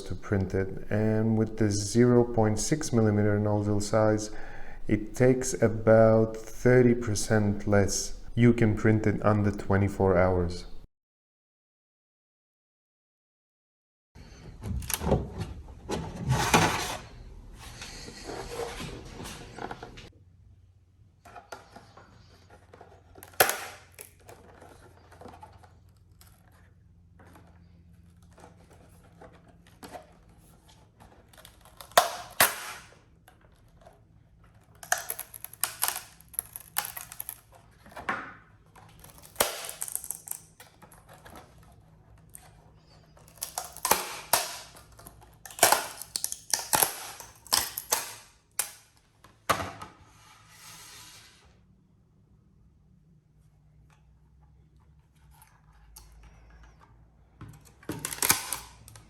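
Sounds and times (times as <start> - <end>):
small hard objects clicking: 34.8 - 37.4, 39.0 - 40.5, 43.2 - 44.8, 45.4 - 48.7.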